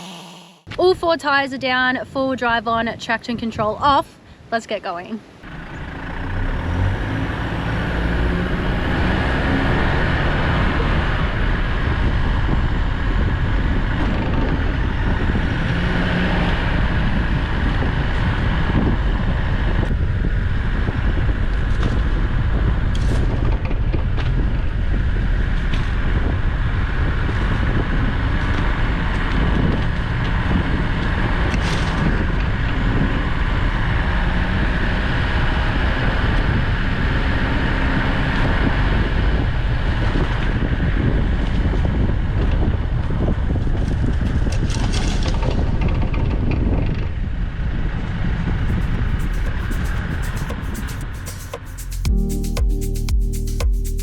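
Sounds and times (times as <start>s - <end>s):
brief sharp high sounds: 0.0s - 0.7s, 48.7s - 54.0s
vehicle engine and tyre rumble: 5.4s - 51.7s.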